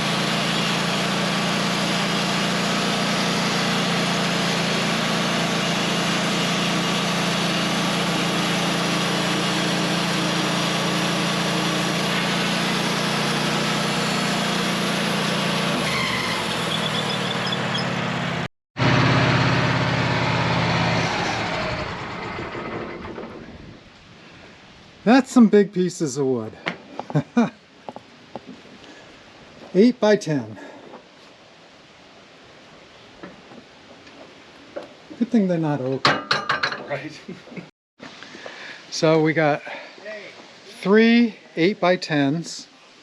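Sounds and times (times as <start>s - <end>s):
sawmill engine running: 0.0s - 23.8s.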